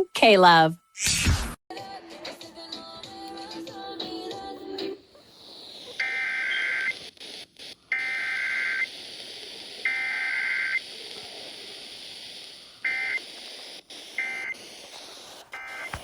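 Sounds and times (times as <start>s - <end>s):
radio hiss: 2.8s - 16.0s
buzzy digital data bursts: 5.2s - 15.5s.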